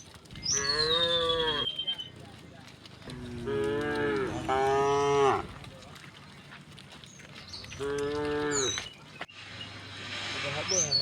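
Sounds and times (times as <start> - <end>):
cows mooing: 0.4 - 1.8, 3.1 - 5.6, 7.8 - 8.8.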